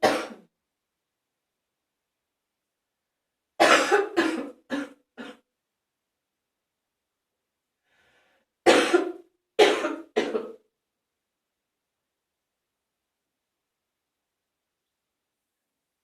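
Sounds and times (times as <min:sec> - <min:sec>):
phlegmy coughing: 0:00.0 - 0:00.5, 0:03.6 - 0:05.5, 0:08.7 - 0:10.7.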